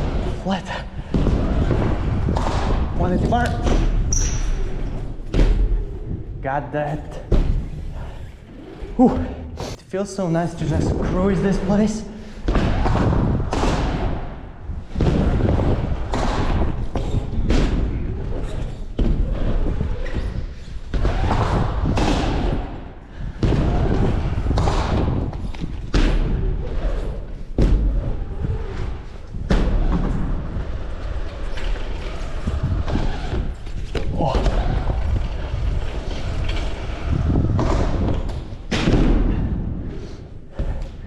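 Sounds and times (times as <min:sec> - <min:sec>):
bike tyres rolling: 0:00.0 - 0:06.4, 0:10.6 - 0:41.0
bike wheels thumping on landing: 0:12.4 - 0:39.8.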